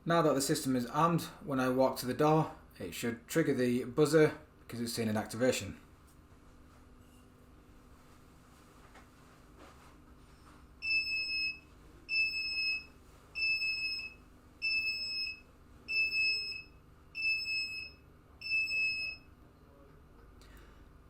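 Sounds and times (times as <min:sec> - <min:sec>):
high buzzer beeps: 0:10.8 - 0:19.2.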